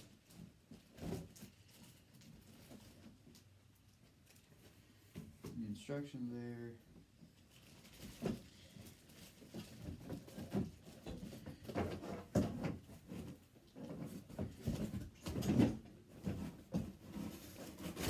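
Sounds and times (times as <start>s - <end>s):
knocks and thumps: 9.5s - 18.0s.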